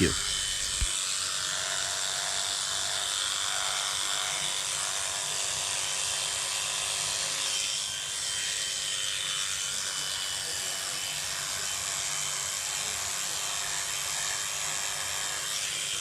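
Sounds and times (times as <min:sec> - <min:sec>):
electric clipper buzzing: 0:00.0 - 0:16.0.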